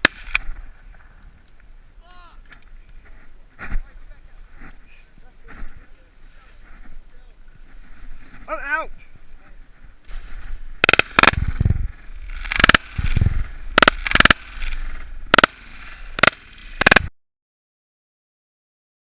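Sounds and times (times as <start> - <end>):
shotgun blasts: 0.0 - 0.6, 10.8 - 17.1.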